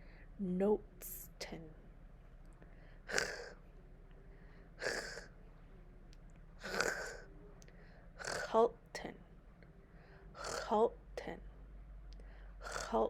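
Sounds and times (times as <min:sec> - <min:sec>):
woman pronouncing hissing consonant: 0:03.1 - 0:03.6, 0:04.8 - 0:05.3, 0:06.6 - 0:07.2, 0:08.2 - 0:08.7, 0:10.4 - 0:10.9, 0:12.6 - 0:13.0.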